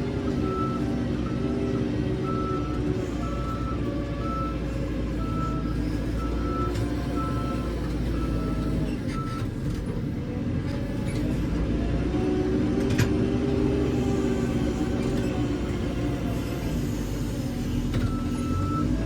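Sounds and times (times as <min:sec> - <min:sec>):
diesel engine running under load: 0:00.0 - 0:19.0
reversing alarm beeping: 0:00.3 - 0:09.4.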